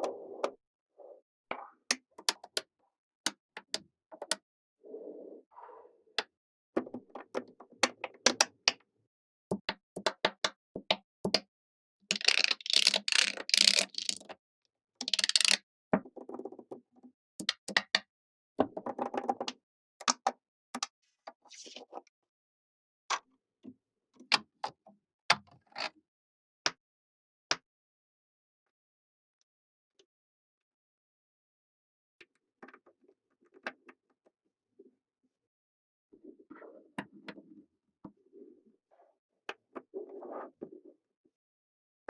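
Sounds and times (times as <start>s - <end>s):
rattling clatter of balls: 12.1s - 14.2s, 15.0s - 15.6s
magnetic balls clicking together: 12.1s - 14.3s, 15.0s - 15.6s.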